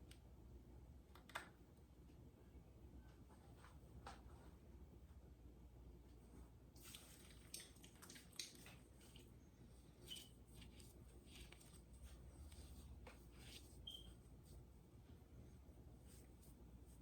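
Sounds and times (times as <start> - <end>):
hands rubbing skin: 9.9 - 14.6
short squeak: 13.8 - 14.2.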